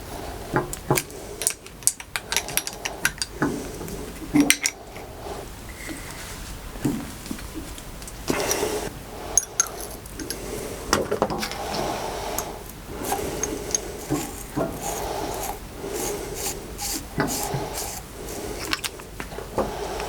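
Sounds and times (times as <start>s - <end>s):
rasping scraping strokes: 11.4s - 20.0s.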